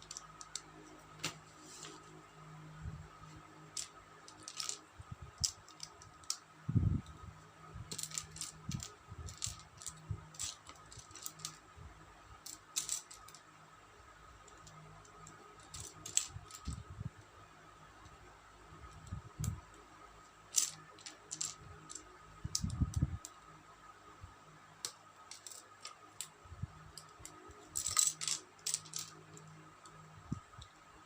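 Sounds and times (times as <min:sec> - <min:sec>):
plastic bricks clicking: 0:03.8 - 0:04.8, 0:15.6 - 0:16.8, 0:26.9 - 0:30.0.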